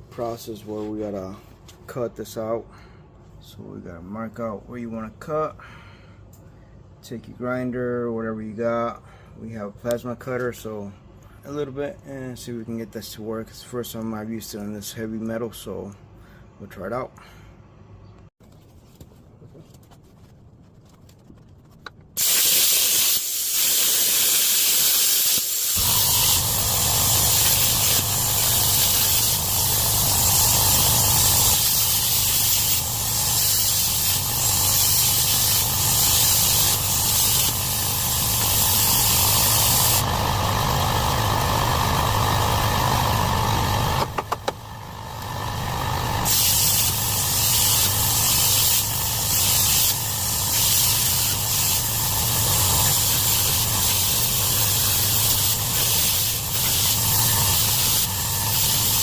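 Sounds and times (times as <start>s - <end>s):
plasma arc low buzz: 22.2s - 59.0s
plasma cutter air hissing: 22.2s - 59.0s.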